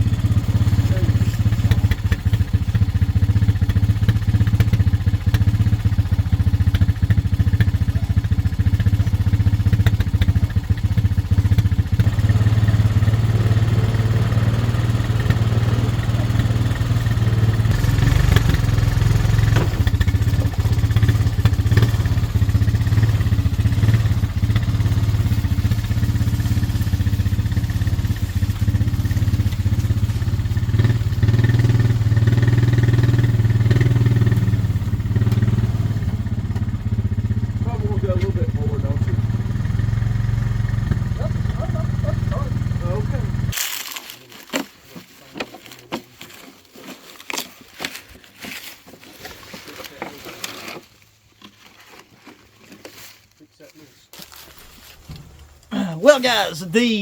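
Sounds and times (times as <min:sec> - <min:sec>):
vehicle driving with low drone: 0:00.0 - 0:43.6.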